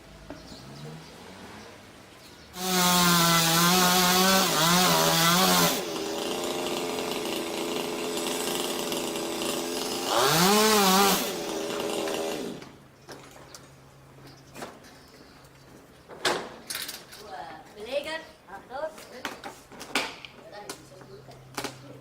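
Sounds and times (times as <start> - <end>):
chainsaw cutting wood: 2.5 - 12.8.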